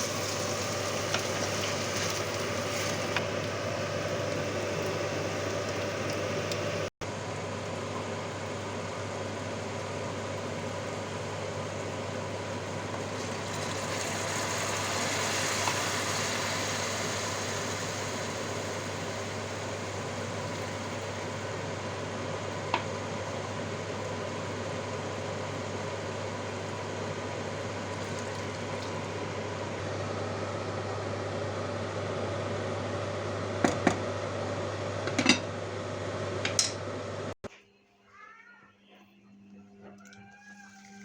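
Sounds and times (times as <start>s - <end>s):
pan sizzling: 0.0s - 6.9s, 12.2s - 29.9s.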